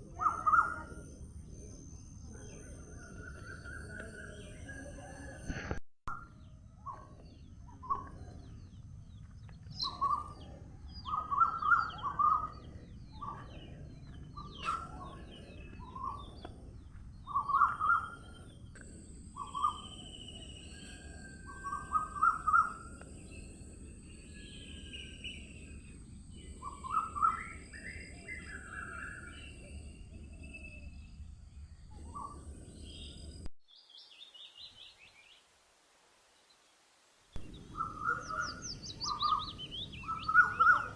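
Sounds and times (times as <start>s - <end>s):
birds chirping: 0.0s - 35.4s, 37.4s - 40.9s.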